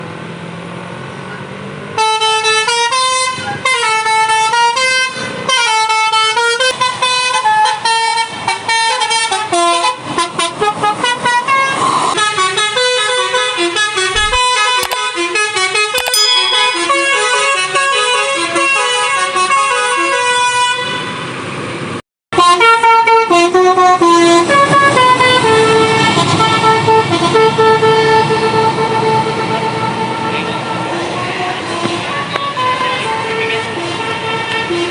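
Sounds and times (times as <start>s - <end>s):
multi-tone air horn melody: 31.5s - 34.9s.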